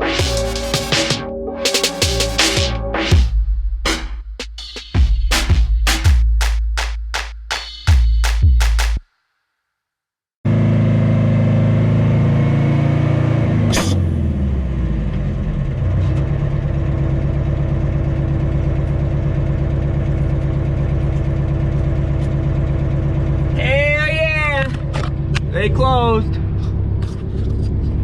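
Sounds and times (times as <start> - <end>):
diesel truck engine running: 14.2 - 28.0.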